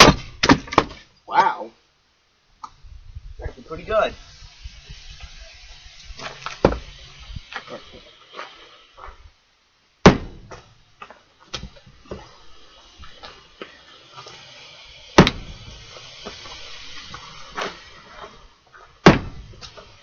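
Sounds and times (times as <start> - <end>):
splitting maul striking firewood: 0.0 - 1.1, 10.0 - 12.2, 15.2 - 15.5, 19.0 - 19.8.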